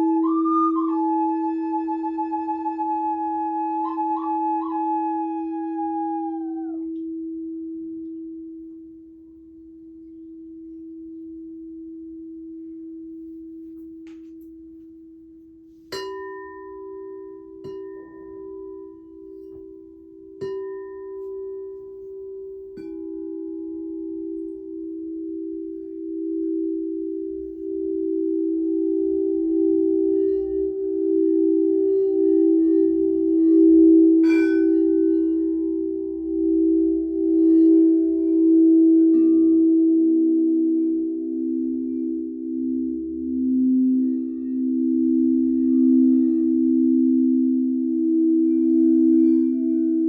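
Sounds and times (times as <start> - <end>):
singing bowls ringing: 15.9 - 50.0.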